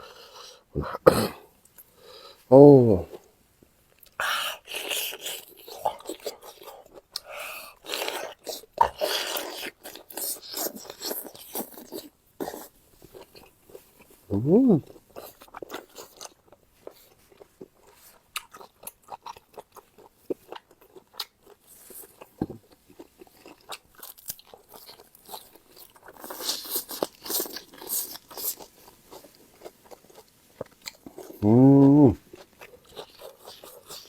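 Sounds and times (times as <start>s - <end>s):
chewing and crunching food: 3.0s - 34.0s.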